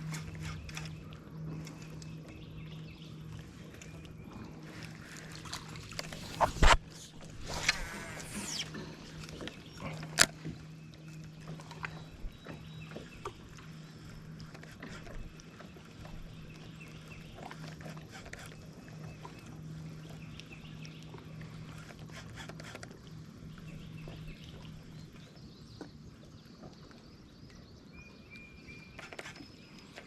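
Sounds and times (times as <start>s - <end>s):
short chirps: 6.1s - 6.8s.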